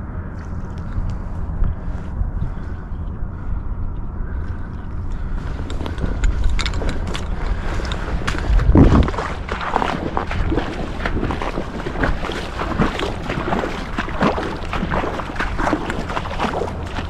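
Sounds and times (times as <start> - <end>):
wind buffeting microphone: 0.0 - 17.0
water sloshing and splashing: 4.4 - 17.0.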